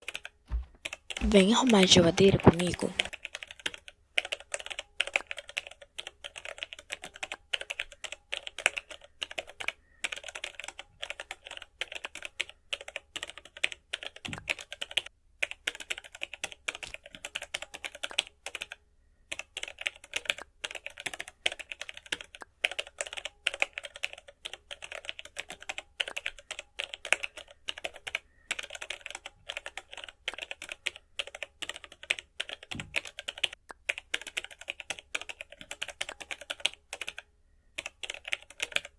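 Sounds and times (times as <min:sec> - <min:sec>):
rapid keyboard typing: 0:00.0 - 0:38.9.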